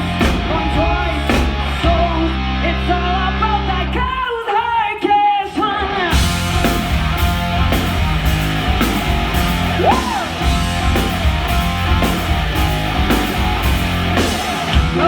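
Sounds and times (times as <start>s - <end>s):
drum and cymbal hits: 0.0s - 1.8s, 6.1s - 15.0s
bass guitar: 0.0s - 4.3s, 5.9s - 15.0s
distorted electric guitar: 5.7s - 15.0s.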